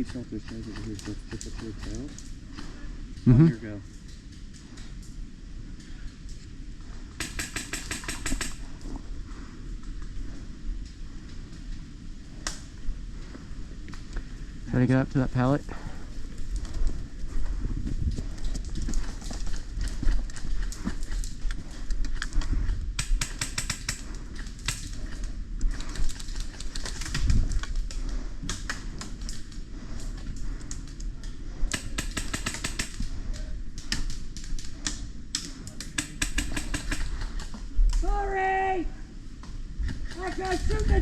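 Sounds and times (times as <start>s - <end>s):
wind rumble on microphone: 0.0s - 41.0s
airsoft rifles firing bursts: 7.2s - 8.6s, 23.0s - 24.0s, 31.7s - 33.1s, 35.9s - 37.2s.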